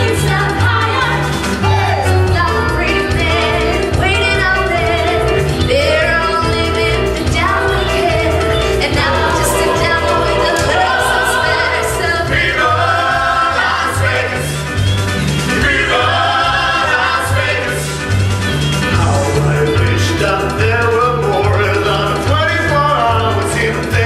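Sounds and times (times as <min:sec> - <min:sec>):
steady bass line: 0:00.0 - 0:24.0
person singing: 0:07.4 - 0:12.9.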